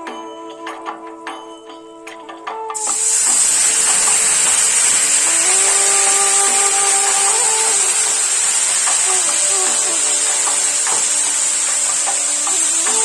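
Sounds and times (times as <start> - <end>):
food sizzling in oil: 2.8 - 13.0.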